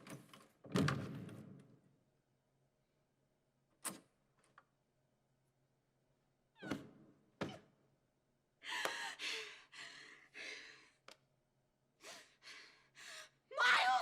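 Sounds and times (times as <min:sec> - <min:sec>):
person gasping and breathing hard: 0:08.6 - 0:11.0.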